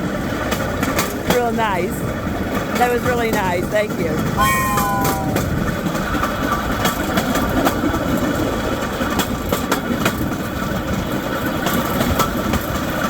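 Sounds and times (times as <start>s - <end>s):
rail cart wheels rumbling on track: 0.0s - 4.4s, 5.4s - 13.0s.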